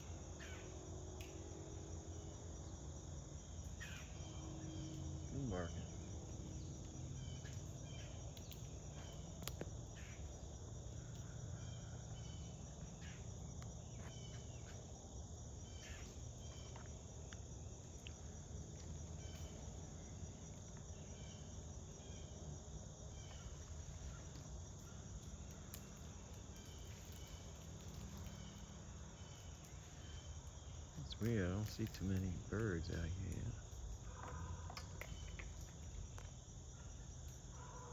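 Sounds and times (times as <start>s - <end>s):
insects chirring: 0.0s - 37.9s
low outdoor hum: 0.0s - 37.9s
faint clicks: 6.8s - 9.8s, 23.3s - 28.7s, 29.3s - 36.4s.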